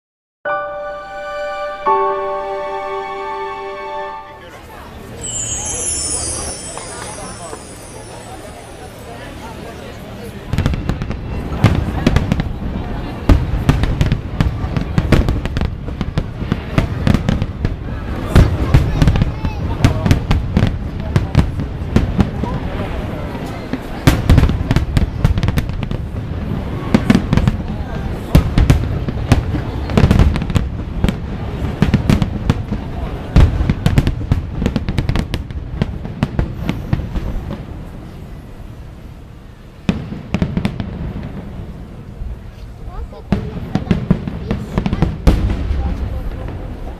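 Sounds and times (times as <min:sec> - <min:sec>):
fireworks bangs and crackles: 0:10.4 - 0:46.9.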